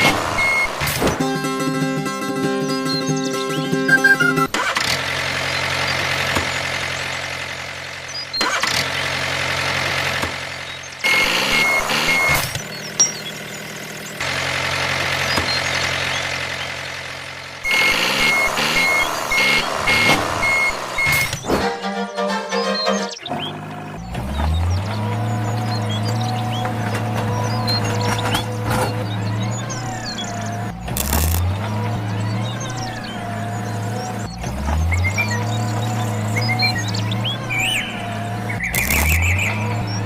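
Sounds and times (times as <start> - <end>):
high reversing beeps: 0.0 - 1.1, 2.4 - 4.5, 10.8 - 14.2, 17.6 - 23.6, 32.1 - 40.0
heavy vehicle engine running: 0.0 - 40.0.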